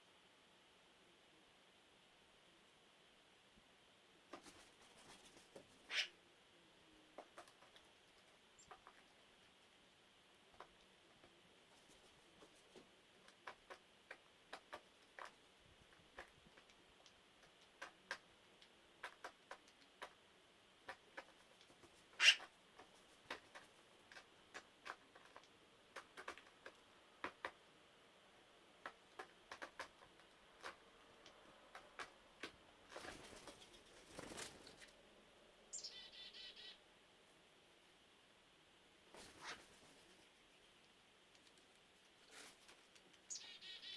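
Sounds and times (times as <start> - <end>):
birds pecking at dry kibble: 7.1 - 9.6, 10.4 - 27.7, 28.3 - 35.0, 39.1 - 43.3.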